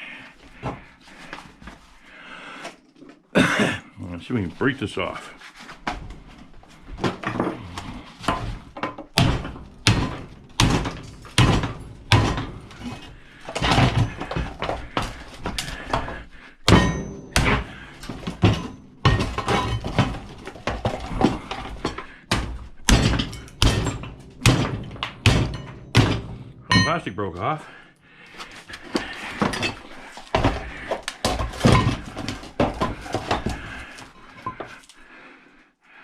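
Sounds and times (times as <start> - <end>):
knocks and bangs on plastic: 8.2 - 26.9, 28.8 - 34.7.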